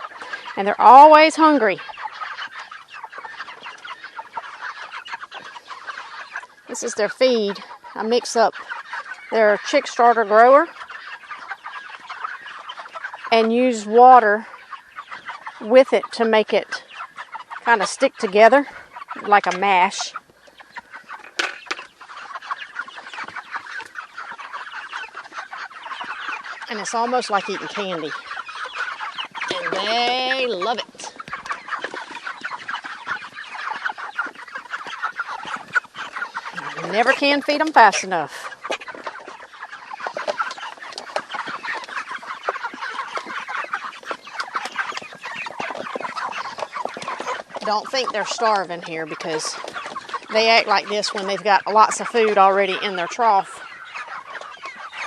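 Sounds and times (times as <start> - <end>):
chickens clucking and peeping: 0.0 - 55.0
clicks of pecking at feed: 18.9 - 26.6, 31.1 - 37.8, 38.5 - 48.6, 49.2 - 51.4.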